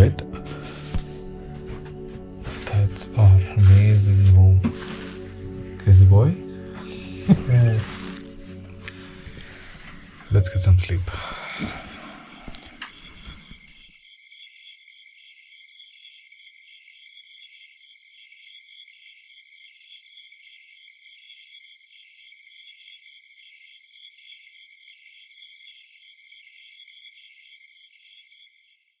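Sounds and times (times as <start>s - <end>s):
crickets chirping: 11.1s - 28.8s.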